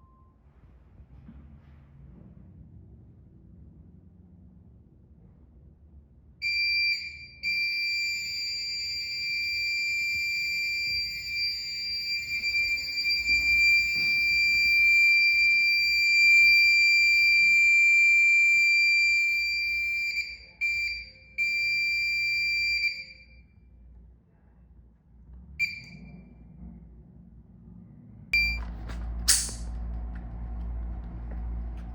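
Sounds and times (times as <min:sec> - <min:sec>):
high-pitched electronic alarm tone: 0:06.5 - 0:23.4.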